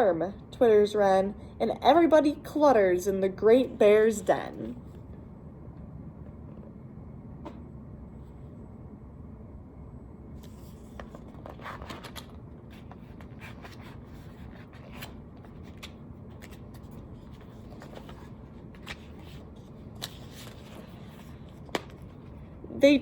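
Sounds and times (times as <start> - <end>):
steady low hum: 0.0 - 23.0
paper pages turning: 10.4 - 22.4.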